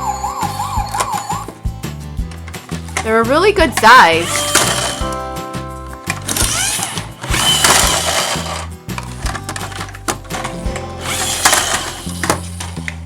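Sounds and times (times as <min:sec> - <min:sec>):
toy vehicle whirring: 0:00.0 - 0:01.6, 0:03.8 - 0:05.2, 0:06.2 - 0:12.9
background music: 0:00.0 - 0:13.0.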